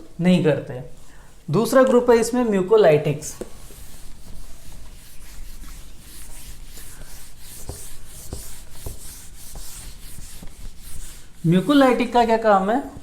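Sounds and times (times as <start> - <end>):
scratchy writing on a board: 3.4 - 12.3.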